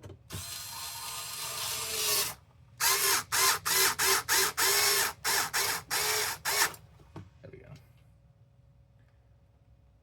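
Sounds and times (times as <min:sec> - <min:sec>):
electric screwdriver driving screw: 0:00.3 - 0:06.8.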